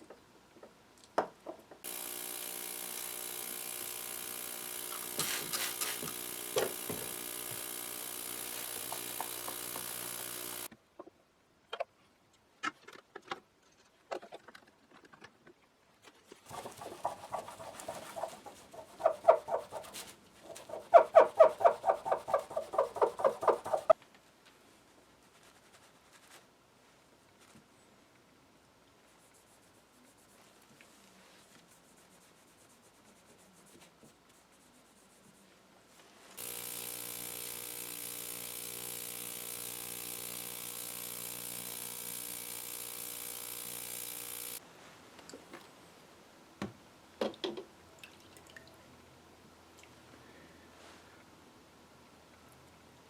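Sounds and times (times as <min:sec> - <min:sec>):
small electric motor running: 0:01.8 - 0:10.7, 0:16.6 - 0:20.0, 0:20.6 - 0:24.0, 0:36.4 - 0:44.6
rapid scrubbing strokes: 0:01.9 - 0:10.7, 0:16.5 - 0:24.0
small clicks: 0:01.9 - 0:10.7.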